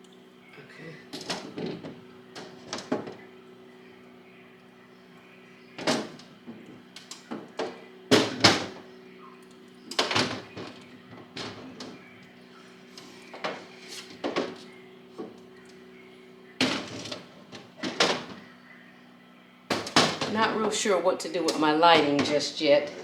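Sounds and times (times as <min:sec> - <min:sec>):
steady low hum: 0:00.0 - 0:23.0
knocks of pots and shelves moved: 0:01.2 - 0:03.4, 0:05.8 - 0:08.9, 0:09.9 - 0:12.2, 0:12.8 - 0:15.4, 0:16.6 - 0:18.4, 0:19.7 - 0:23.0.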